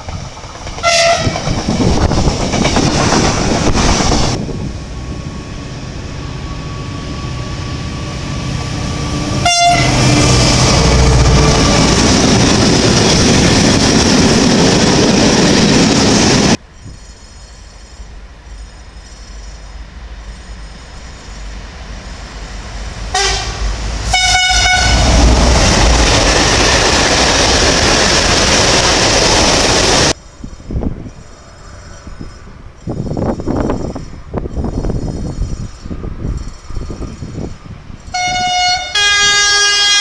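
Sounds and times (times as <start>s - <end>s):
train rushing past: 0.0s - 40.0s
train horn blasts: 0.8s - 1.5s, 5.2s - 12.0s, 23.1s - 26.0s, 38.1s - 40.0s.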